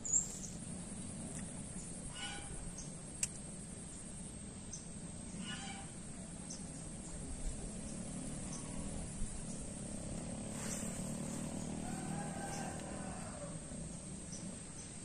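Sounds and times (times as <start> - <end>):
distant traffic hum: 0.0 - 15.0
high-pitched insect drone: 6.8 - 15.0.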